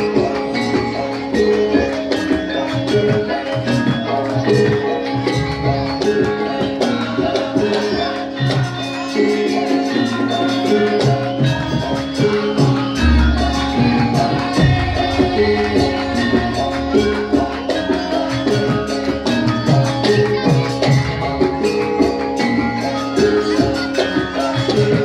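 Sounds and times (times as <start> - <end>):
repeating pitched melody: 13.0 - 19.4
dense steady percussion: 13.0 - 20.1.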